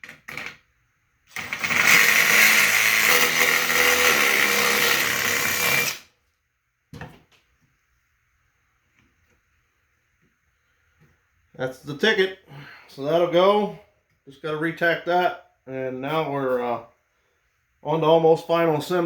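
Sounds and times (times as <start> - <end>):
electric drill boring metal: 1.3 - 6.1.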